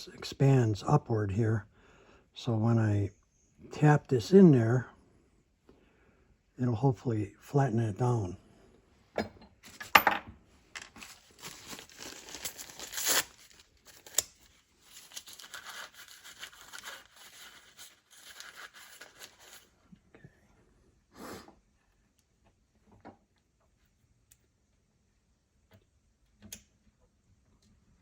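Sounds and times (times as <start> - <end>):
crinkling handling noise: 10.6 - 19.8.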